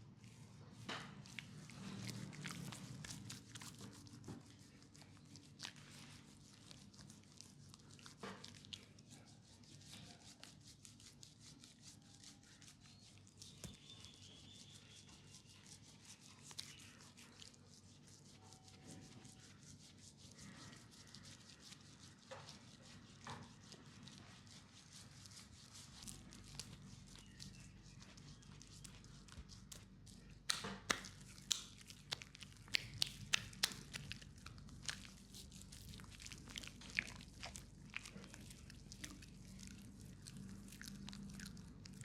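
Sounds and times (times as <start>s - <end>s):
low steady hum: 24.0s - 42.0s
hands rubbing and tapping leg: 28.8s - 39.5s.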